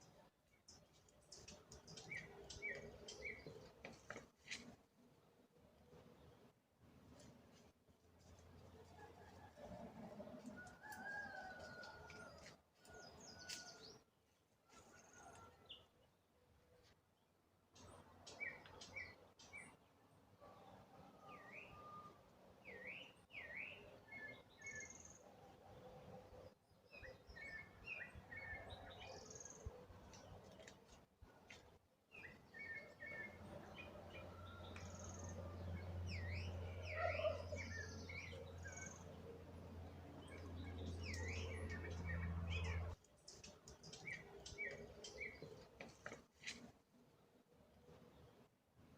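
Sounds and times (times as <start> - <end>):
birds chirping: 0.0 - 4.7, 32.1 - 46.6.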